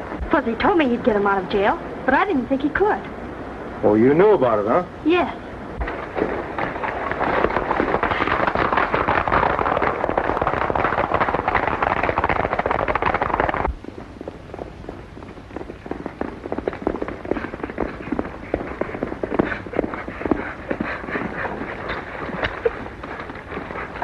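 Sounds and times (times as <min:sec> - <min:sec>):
horses galloping hoofbeats: 0:05.8 - 0:24.0.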